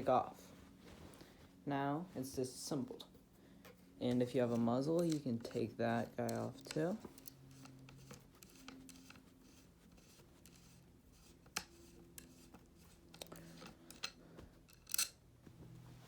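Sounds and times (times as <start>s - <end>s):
rifle parts clicking and scraping: 4.2s - 15.2s.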